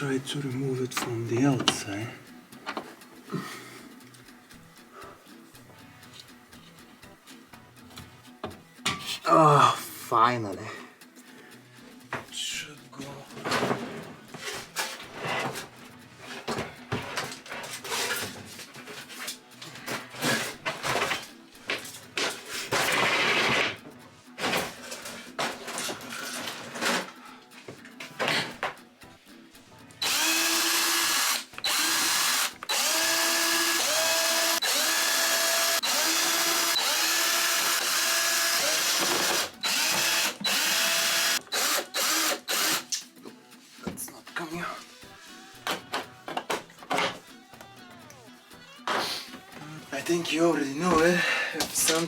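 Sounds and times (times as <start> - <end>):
knocks and clicks of hand work: 7.9 - 9.1
power drill running: 30.0 - 42.9.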